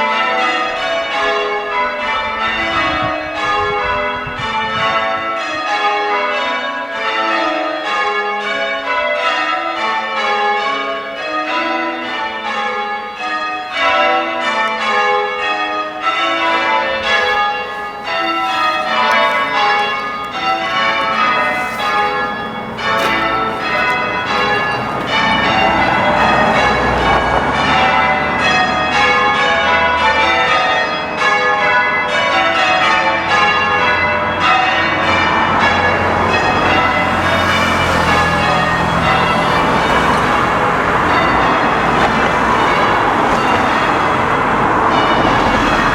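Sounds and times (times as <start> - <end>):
church bells ringing: 0.0 - 45.9.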